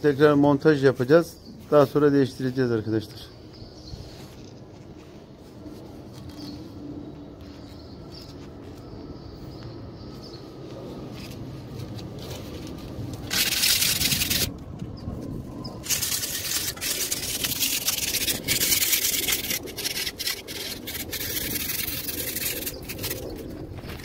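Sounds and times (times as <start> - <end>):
sandpaper scraping metal: 13.2 - 14.5, 15.8 - 24.0.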